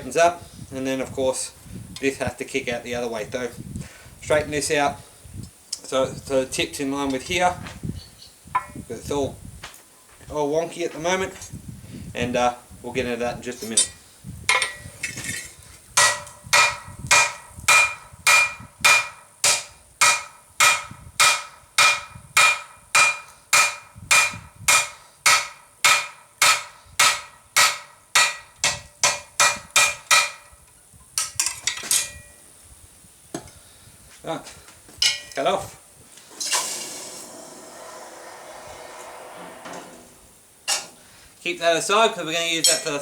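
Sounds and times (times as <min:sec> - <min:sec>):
hammer striking steel on anvil: 0:13.7 - 0:14.8, 0:16.0 - 0:30.5, 0:42.6 - 0:43.0.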